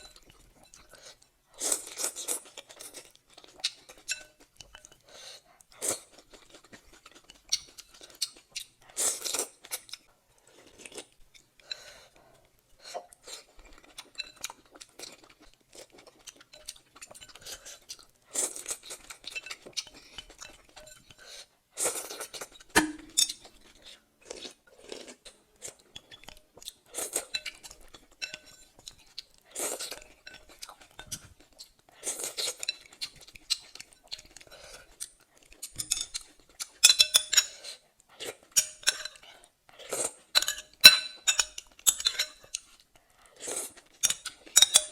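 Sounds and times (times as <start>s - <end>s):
chewing and crunching food: 0.0s - 44.9s
utensil clinking against dish: 22.8s - 23.4s, 40.4s - 42.4s.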